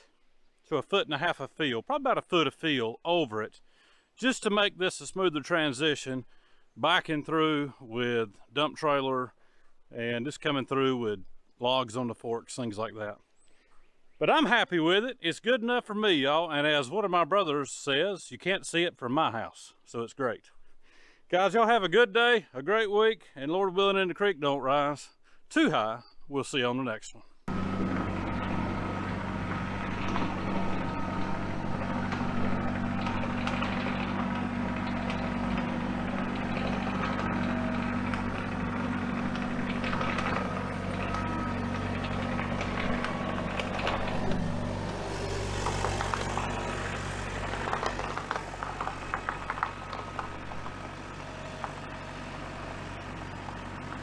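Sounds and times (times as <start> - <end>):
excavator diesel engine running: 27.5 - 54.0.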